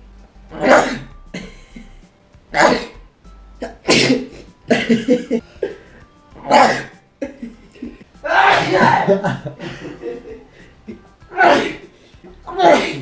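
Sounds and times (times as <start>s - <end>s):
person sneezing: 0.5s - 1.1s, 2.6s - 3.0s, 3.6s - 4.6s, 6.4s - 7.0s, 11.3s - 11.9s, 12.5s - 13.0s.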